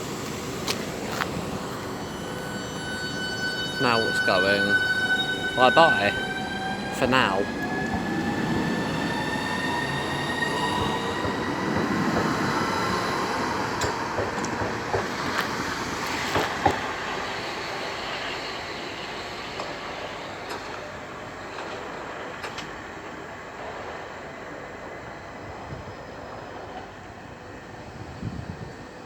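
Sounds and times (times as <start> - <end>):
electric train motors whining: 0.0 - 22.6.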